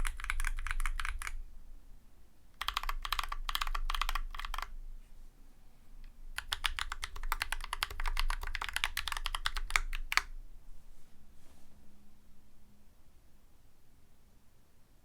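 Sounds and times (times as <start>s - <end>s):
mechanical keyboard typing: 0.0s - 1.4s, 2.6s - 4.7s, 6.4s - 10.3s
faint room noise: 0.0s - 15.0s.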